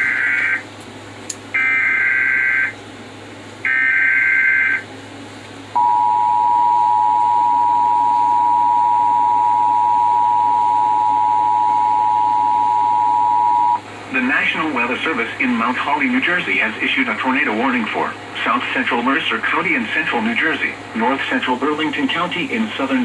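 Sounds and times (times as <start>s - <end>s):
two-tone attention signal: 5.8s - 13.8s.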